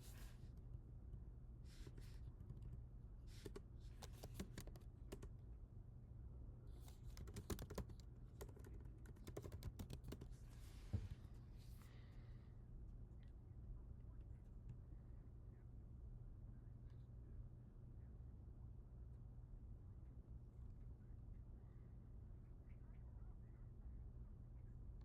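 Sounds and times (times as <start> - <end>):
computer keyboard typing: 3.3 - 5.3, 7.0 - 10.3.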